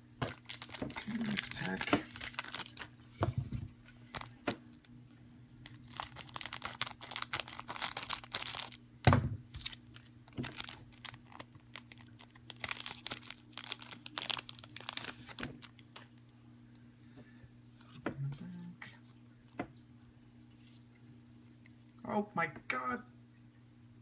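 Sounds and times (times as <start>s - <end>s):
foil wrapper crinkling and tearing: 0.2s - 3.1s, 3.8s - 4.9s, 5.6s - 8.8s, 9.5s - 16.2s.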